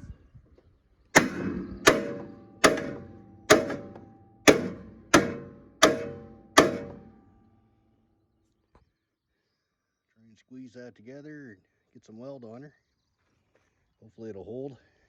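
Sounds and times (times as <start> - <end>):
hammer striking steel: 1.2 - 7.4.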